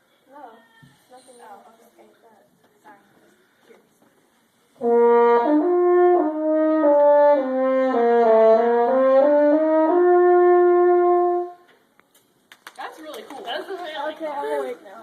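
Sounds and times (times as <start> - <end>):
french horn melody: 4.8 - 11.7.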